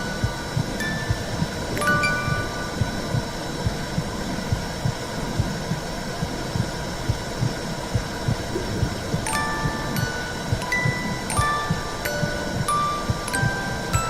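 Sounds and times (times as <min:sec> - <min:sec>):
muffled heartbeat thumping: 0:00.0 - 0:13.6
continuous whooshing rush: 0:00.0 - 0:14.0.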